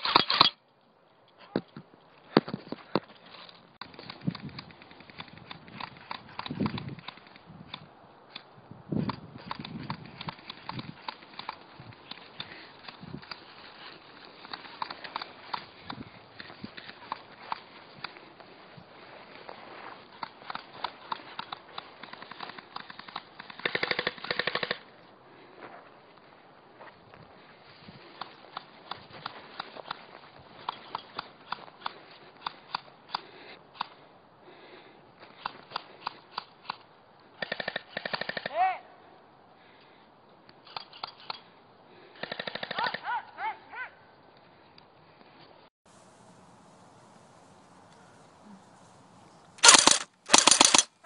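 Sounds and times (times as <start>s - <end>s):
airsoft guns firing: 22.1s - 24.8s, 49.6s - 50.9s
people yelling short calls: 38.5s - 38.9s, 42.8s - 44.0s
airsoft gun shots: 49.6s - 50.9s.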